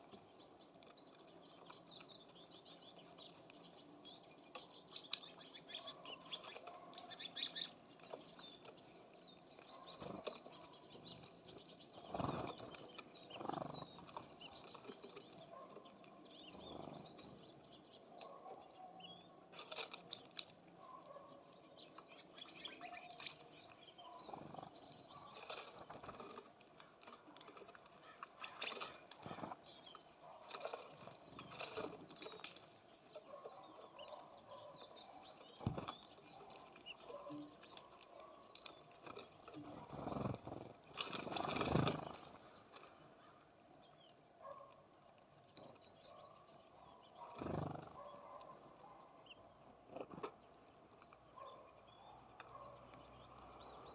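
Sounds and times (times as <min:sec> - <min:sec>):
songbirds chirping: 0:00.0 - 0:53.9
wing flutters: 0:12.0 - 0:14.3, 0:39.0 - 0:42.4, 0:47.3 - 0:48.0.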